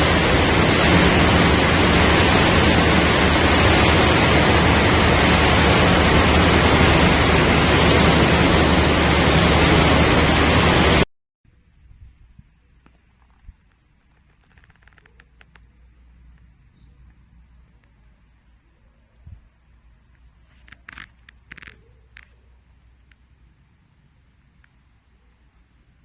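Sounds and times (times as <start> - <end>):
machinery rushing with water: 0.0 - 11.1.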